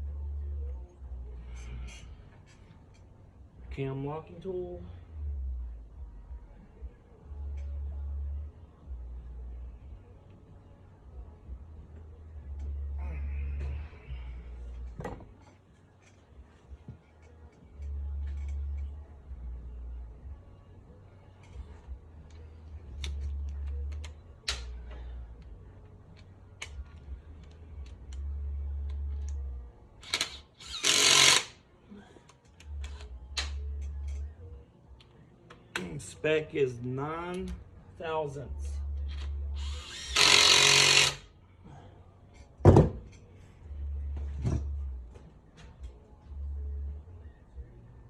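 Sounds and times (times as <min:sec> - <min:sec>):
metallic clicks of hand tools: 0:22.3 - 0:25.0, 0:30.0 - 0:31.5
loud thunk: 0:42.6 - 0:43.0.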